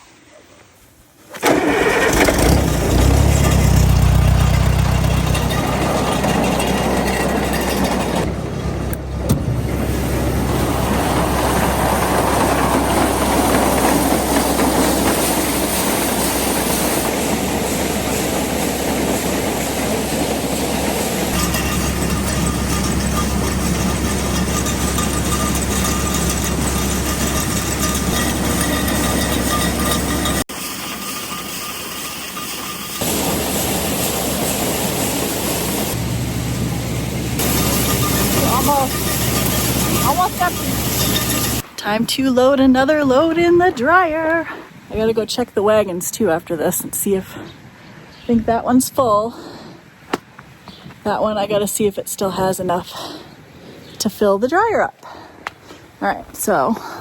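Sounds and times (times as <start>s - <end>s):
truck engine starting and running: 1.3s - 44.0s.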